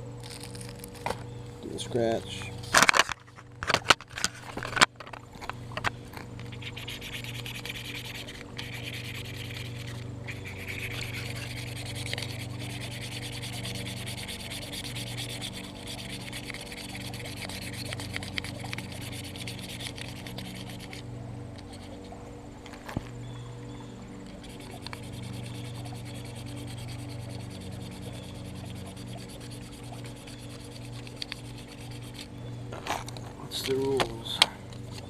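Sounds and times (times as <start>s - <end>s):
scratch card being scraped: 6.5s - 21.0s, 21.6s - 22.1s, 24.4s - 32.3s.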